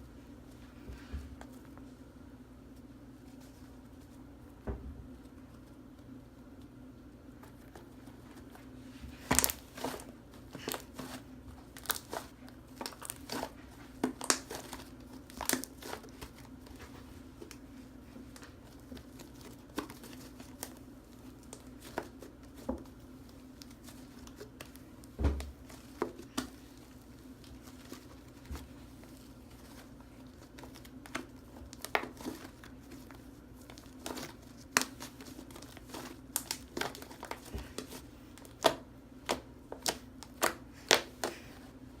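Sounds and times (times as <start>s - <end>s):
slime squished with crackling pops: 11.8s - 16.3s.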